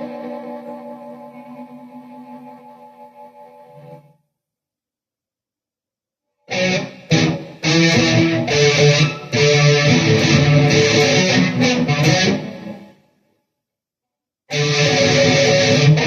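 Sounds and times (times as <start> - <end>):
electric guitar notes and chords: 6.5 - 12.9, 14.5 - 16.0.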